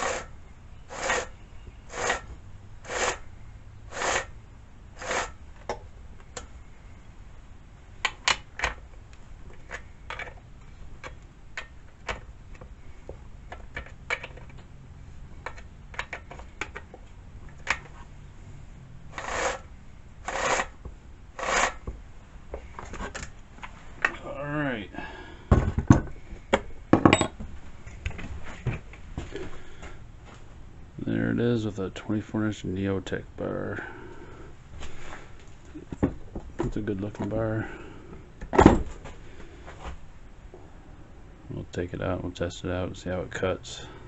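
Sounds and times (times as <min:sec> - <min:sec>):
short rasping strokes: 0:00.0 - 0:03.2, 0:03.9 - 0:04.3, 0:05.0 - 0:05.4, 0:19.1 - 0:20.8.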